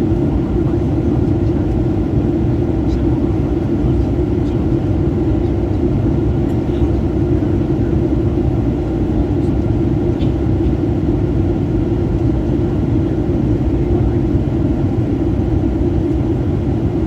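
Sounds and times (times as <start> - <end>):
airliner cabin engine rumble: 0.0 - 17.0.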